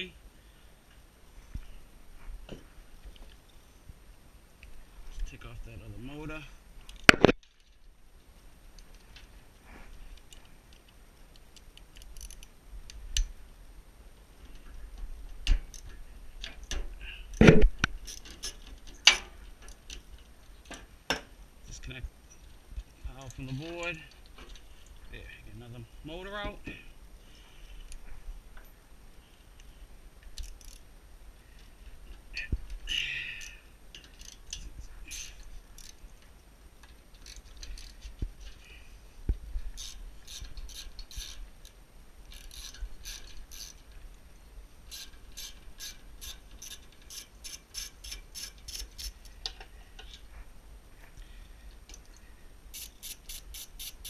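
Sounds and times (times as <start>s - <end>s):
metal clicks and scrapes: 9.9s - 13.3s, 14.4s - 20.9s, 33.4s - 38.8s, 39.7s - 44.1s, 44.9s - 50.3s, 51.9s - 54.0s
hand tools clicking and clanking: 17.8s - 21.3s, 32.1s - 38.8s, 44.9s - 50.3s.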